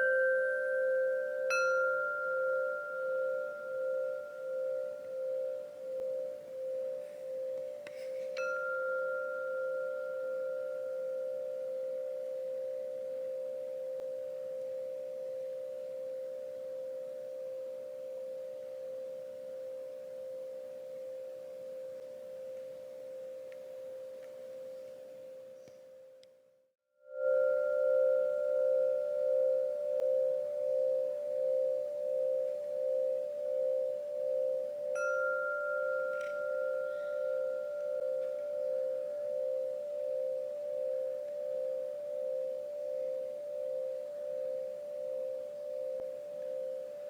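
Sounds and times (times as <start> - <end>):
metal wind chime ringing: 0.0 - 12.9, 34.4 - 42.6
wind chime struck: 0.0 - 12.9, 27.1 - 43.2.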